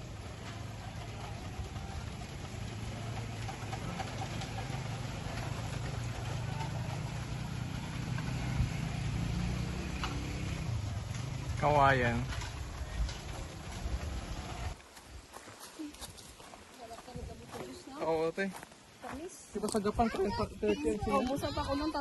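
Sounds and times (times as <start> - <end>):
engine humming: 0.0 - 15.0.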